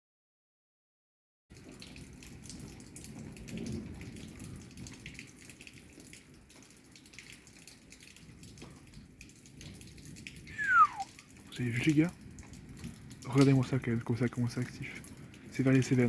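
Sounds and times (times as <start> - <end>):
raindrops pattering on hard surfaces: 1.5 - 16.0
low thunder rumble: 3.1 - 5.0.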